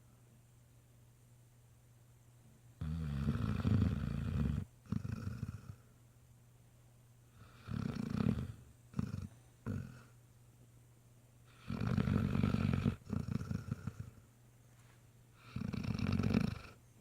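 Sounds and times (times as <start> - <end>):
puppy snoring: 2.8 - 5.9, 7.3 - 10.2, 11.5 - 14.2, 15.4 - 16.8.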